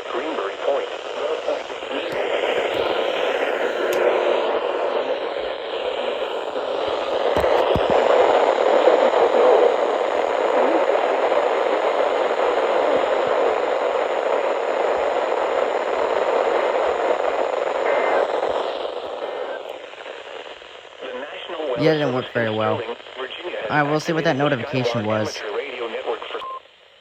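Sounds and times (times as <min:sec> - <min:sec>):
static clicks: 0:00.0 - 0:05.2, 0:06.5 - 0:21.0
radio static hiss: 0:00.0 - 0:27.0.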